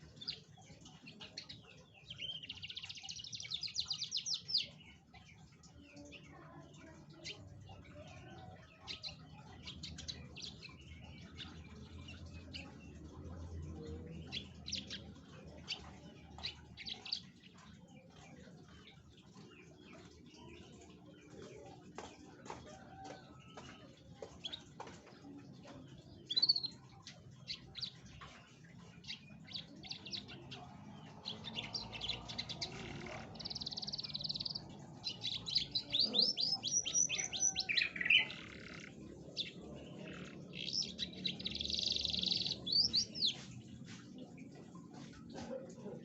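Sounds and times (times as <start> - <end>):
canary singing trills: 0.0 - 21.4, 22.8 - 45.3.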